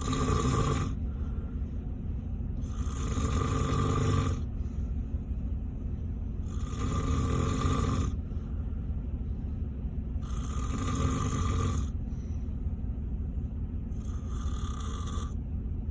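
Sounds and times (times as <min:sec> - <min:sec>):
man snoring loudly: 0:00.0 - 0:01.0, 0:02.6 - 0:04.5, 0:06.4 - 0:08.2, 0:10.2 - 0:11.9, 0:14.0 - 0:15.4
steady low rumble: 0:00.0 - 0:15.9.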